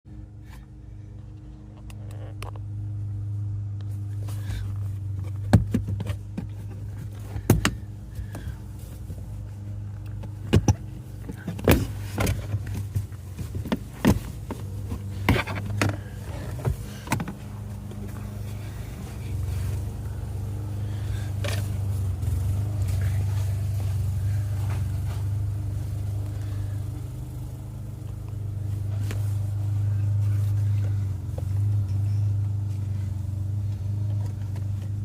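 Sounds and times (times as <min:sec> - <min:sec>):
steady low hum: 0:00.1 - 0:35.0.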